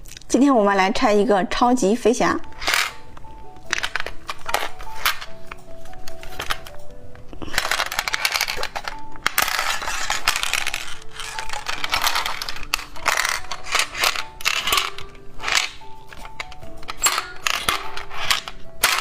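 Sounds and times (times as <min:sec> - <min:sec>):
light background music: 0:00.0 - 0:19.0
plastic packaging crinkling and tearing: 0:06.2 - 0:18.7.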